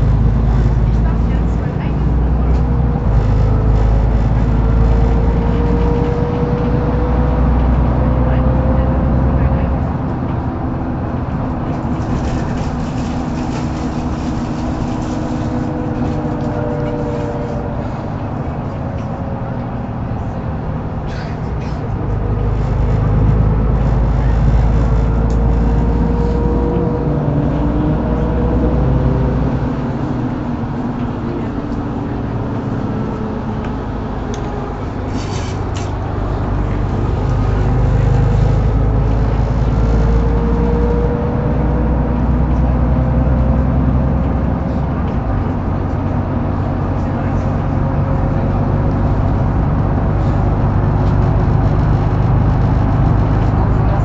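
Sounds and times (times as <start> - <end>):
bus engine drone: 0.0 - 54.0.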